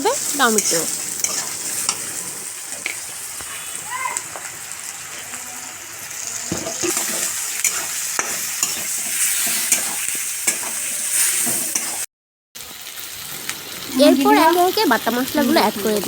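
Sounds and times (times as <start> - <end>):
onion sizzling in hot oil: 0.0 - 16.0
spatula scraping a pan: 0.4 - 12.1.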